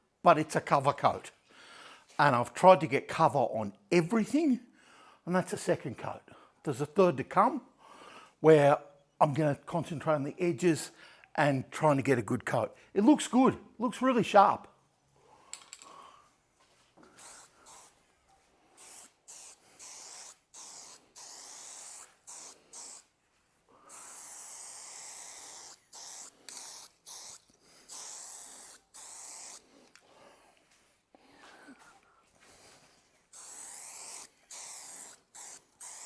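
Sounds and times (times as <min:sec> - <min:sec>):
spray paint can hissing: 0:17.1 - 0:18.0, 0:18.7 - 0:23.1, 0:23.9 - 0:29.7, 0:33.3 - 0:36.0.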